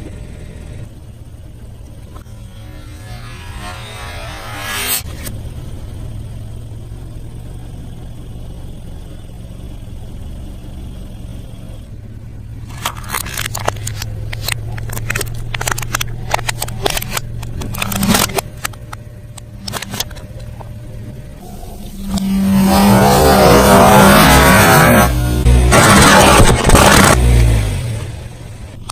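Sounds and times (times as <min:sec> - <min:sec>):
steady low hum: 0:00.0 - 0:27.3.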